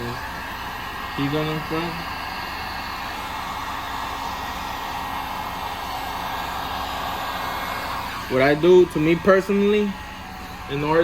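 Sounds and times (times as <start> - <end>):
heat gun blowing: 0.0 - 11.0.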